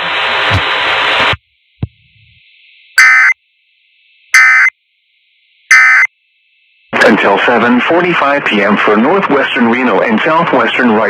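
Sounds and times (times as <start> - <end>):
faint radio hiss: 0.0 - 11.0
digital data tone bursts: 2.9 - 3.4, 4.3 - 4.8, 5.7 - 6.2.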